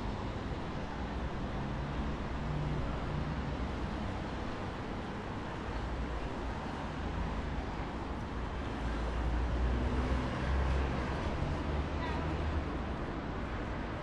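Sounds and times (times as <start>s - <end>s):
dense traffic rumble: 0.0s - 14.0s
heavy vehicles rumbling past: 6.5s - 13.8s.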